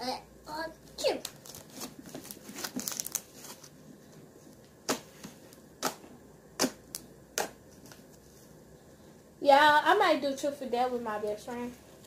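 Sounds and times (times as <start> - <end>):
sharp pops: 5.8 - 7.6.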